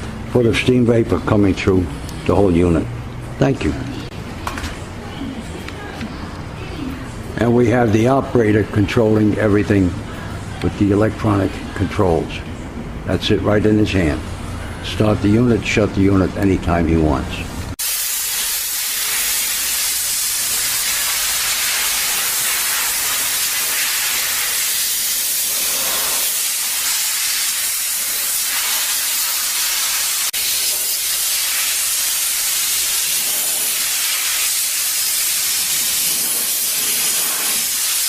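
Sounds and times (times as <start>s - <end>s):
steam cleaner hissing: 17.8s - 38.0s.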